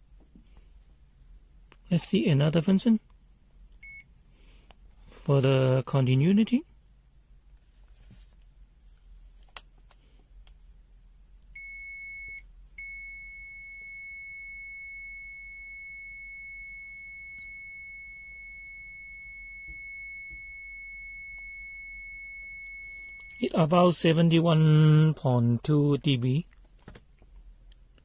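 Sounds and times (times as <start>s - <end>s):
multimeter continuity beep: 3.8s - 4.1s, 11.6s - 23.7s.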